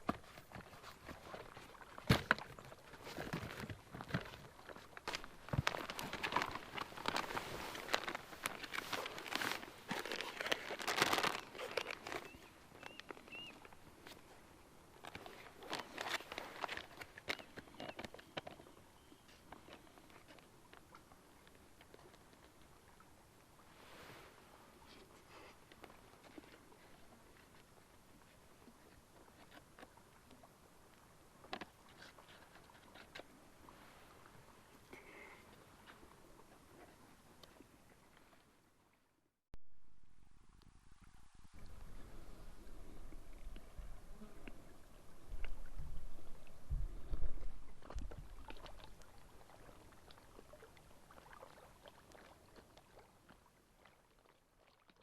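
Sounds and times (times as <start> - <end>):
footsteps crunching outdoors: 2.2 - 13.8
faint bird chirps: 12.2 - 13.6.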